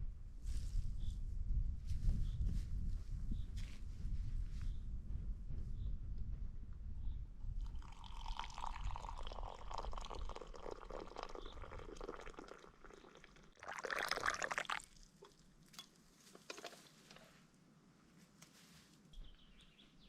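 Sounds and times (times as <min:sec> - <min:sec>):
liquid pouring and gurgling: 0:07.6 - 0:15.8.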